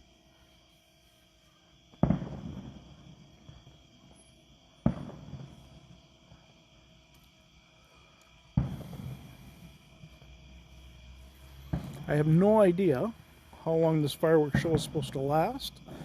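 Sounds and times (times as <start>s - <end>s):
faint steady hum: 0.0s - 16.0s
fireworks booming: 1.9s - 6.9s, 8.4s - 16.0s.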